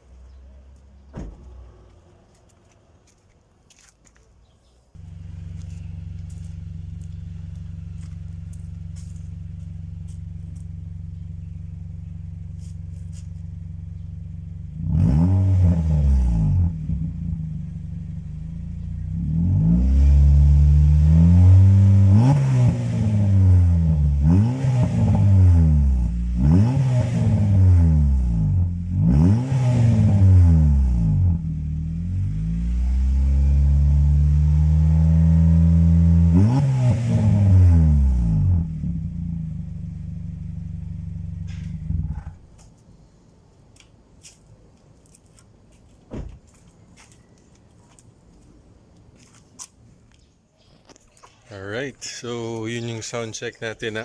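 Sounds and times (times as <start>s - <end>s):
car engine idling and revving: 5.0s - 42.7s.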